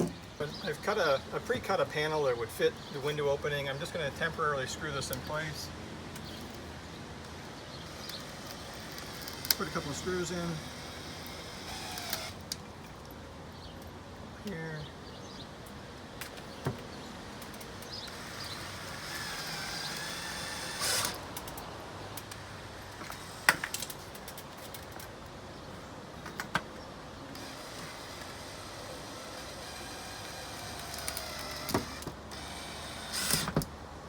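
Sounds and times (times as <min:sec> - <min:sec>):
power drill driving screws: 0:07.8 - 0:12.5, 0:17.5 - 0:21.6, 0:23.0 - 0:24.0, 0:27.3 - 0:33.7.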